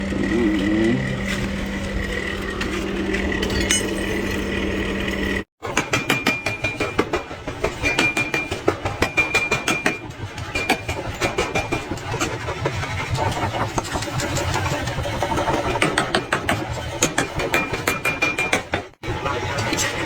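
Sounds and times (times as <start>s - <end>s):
machine hum: 0.0s - 5.5s.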